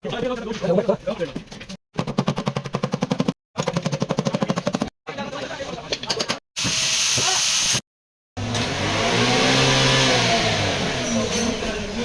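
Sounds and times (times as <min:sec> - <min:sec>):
car engine revving: 0:08.4 - 0:12.0.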